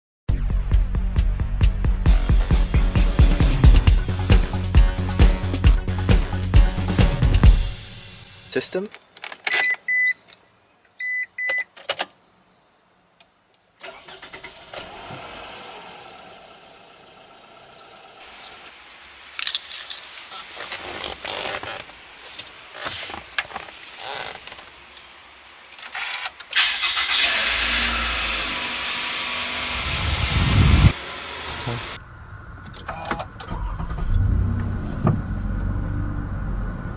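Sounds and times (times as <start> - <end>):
car chime beeps: 9.6 - 10.2, 11.0 - 11.7
car engine starting: 13.8 - 18.8, 25.9 - 36.9
car cabin noise: 29.7 - 32.0, 32.6 - 36.4.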